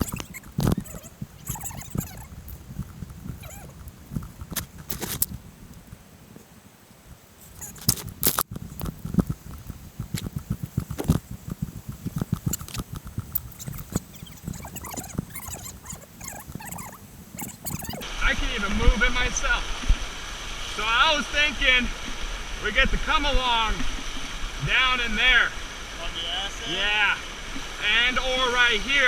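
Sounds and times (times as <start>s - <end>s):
rustling: 0.0s - 18.0s
sharp clicks: 7.5s - 18.0s.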